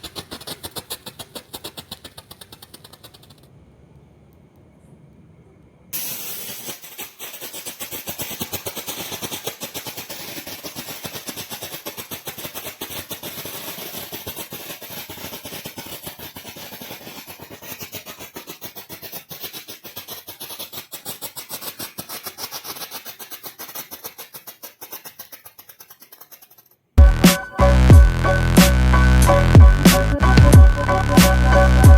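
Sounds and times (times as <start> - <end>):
firework crackle of small pops: 0.0 - 3.5, 6.0 - 27.0.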